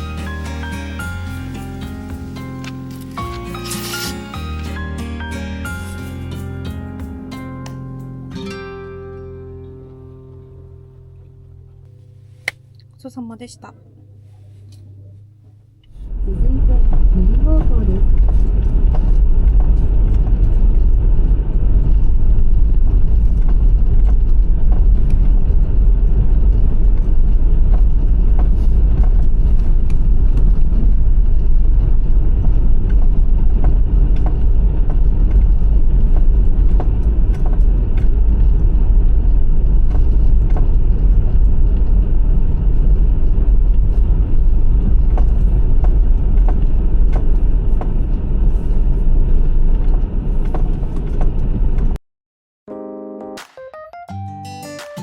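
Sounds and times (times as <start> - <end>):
car cabin road rumble: 8.6 - 52.0.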